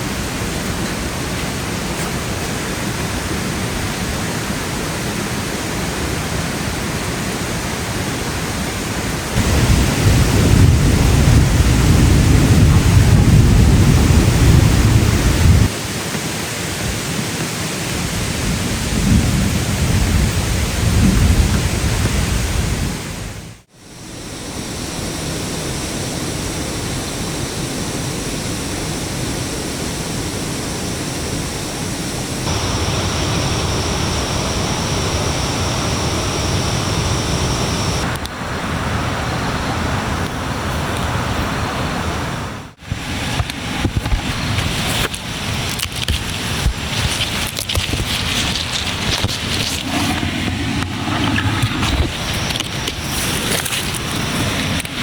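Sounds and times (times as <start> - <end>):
heavy rain falling: 9.2 - 23.5, 31.8 - 42.0
thunder rumbling: 9.4 - 15.8, 18.0 - 23.6, 32.2 - 38.2.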